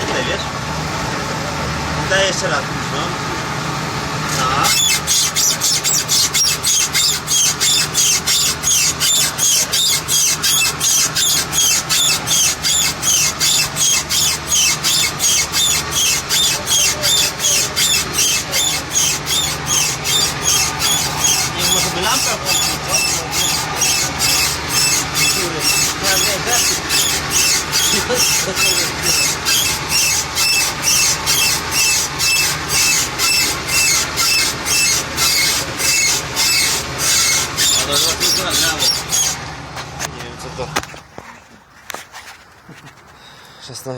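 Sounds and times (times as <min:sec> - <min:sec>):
universal joint squeaking: 0:04.3 - 0:39.4.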